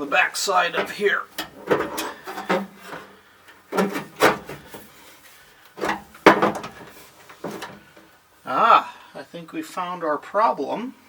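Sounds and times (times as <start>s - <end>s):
light switch parts clattering: 0.8s - 4.8s, 5.8s - 7.8s.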